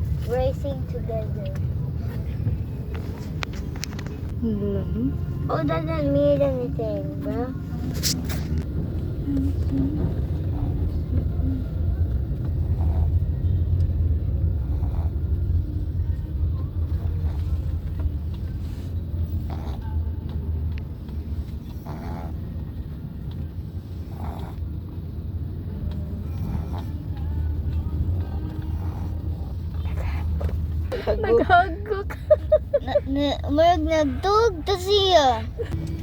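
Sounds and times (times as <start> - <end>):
dog snoring: 12.5 - 13.6, 14.4 - 15.9, 16.9 - 17.8, 18.7 - 20.2, 21.5 - 25.0, 25.7 - 30.6.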